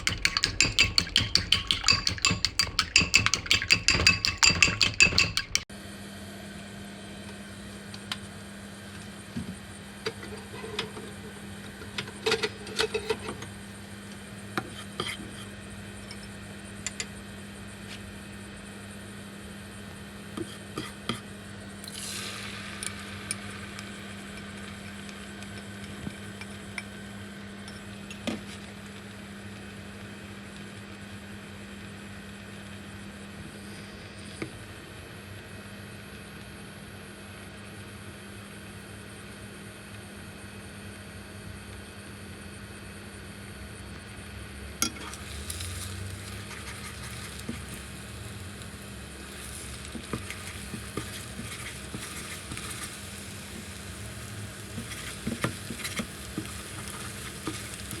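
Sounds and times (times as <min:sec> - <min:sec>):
metal utensils clattering on pan: 0:00.0 - 0:05.6.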